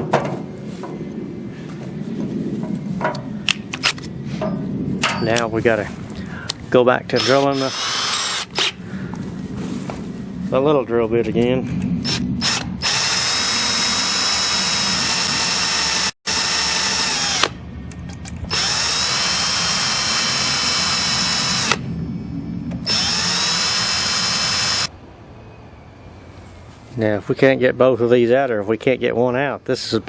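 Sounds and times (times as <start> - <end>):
electric drill whining: 7.2 - 8.7, 12.0 - 17.6, 18.5 - 21.8, 22.8 - 24.9.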